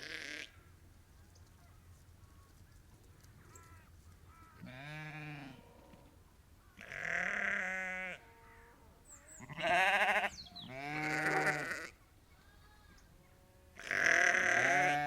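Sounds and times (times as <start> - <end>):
sheep bleating: 0.0 - 0.6, 4.5 - 5.8, 6.8 - 13.0, 13.8 - 15.0.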